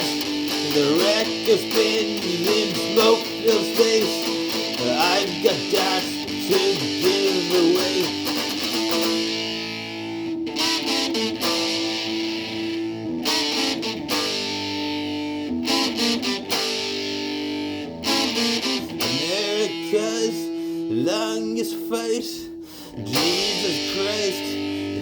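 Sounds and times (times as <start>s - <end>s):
band playing: 0.0s - 9.5s
distorted electric guitar: 0.0s - 25.0s.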